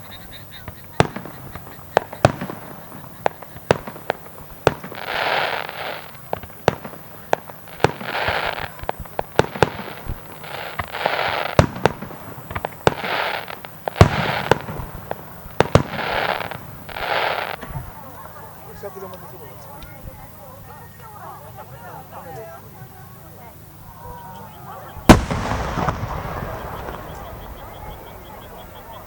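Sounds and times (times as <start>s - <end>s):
fireworks bangs: 0.0s - 18.9s, 24.9s - 29.0s
fireworks hissing crackle: 0.0s - 23.9s, 24.9s - 29.0s.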